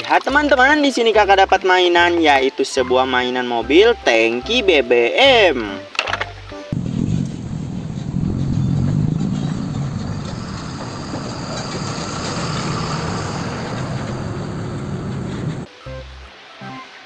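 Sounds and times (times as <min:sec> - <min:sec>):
water rushing: 0:06.8 - 0:15.7.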